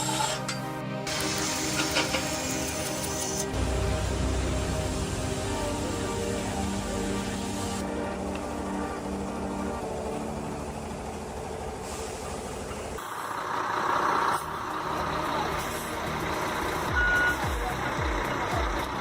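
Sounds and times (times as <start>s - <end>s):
heavy diesel machinery running: 0.3s - 19.0s
low falling sweeps: 3.6s - 11.9s
short beep: 17.0s - 17.4s.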